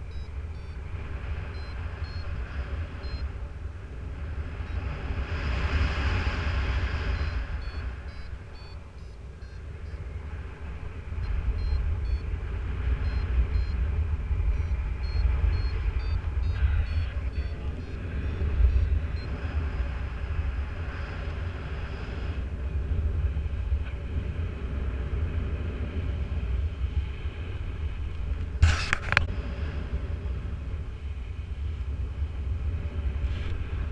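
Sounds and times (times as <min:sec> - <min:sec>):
variometer beeping in high pips: 0:00.0 - 0:00.8, 0:01.5 - 0:03.3, 0:07.0 - 0:10.1, 0:11.2 - 0:12.3, 0:13.0 - 0:13.8, 0:14.4 - 0:19.3
steady high variometer tone: 0:00.0 - 0:24.0
wind buffeting microphone: 0:00.0 - 0:33.9.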